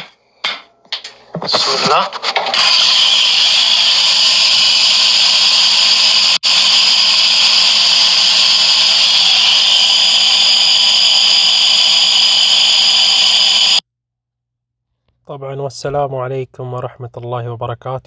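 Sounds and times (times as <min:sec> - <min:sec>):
electric grinder grinding grains: 0:02.6 - 0:13.8.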